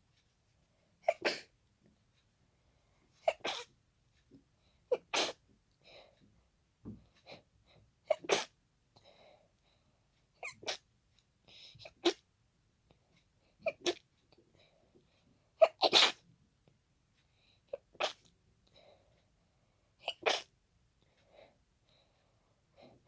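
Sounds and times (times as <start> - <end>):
person sneezing: 15.7 - 16.2.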